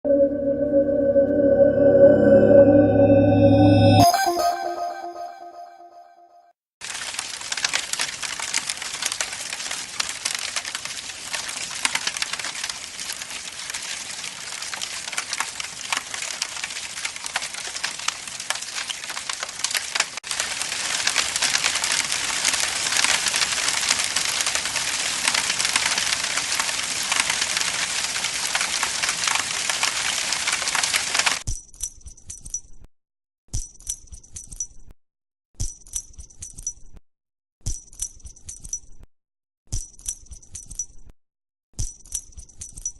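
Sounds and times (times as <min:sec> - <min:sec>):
campfire crackling: 0:06.8 - 0:31.4.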